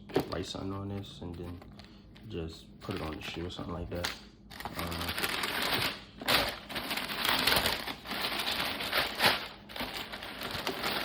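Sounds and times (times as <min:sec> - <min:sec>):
wrapping paper rustling: 0:04.5 - 0:11.0.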